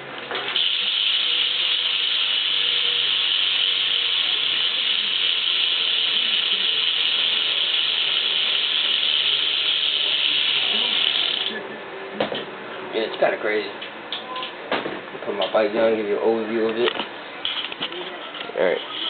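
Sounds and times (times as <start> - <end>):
bicycle hub ratcheting buzz: 0.4 - 11.6.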